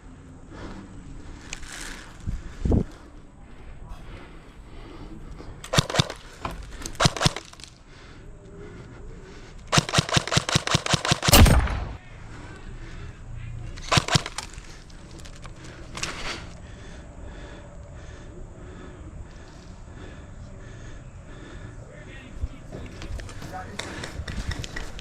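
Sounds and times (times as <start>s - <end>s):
airsoft rifle bursts: 5.6s - 7.7s, 9.7s - 12.0s, 13.8s - 16.2s.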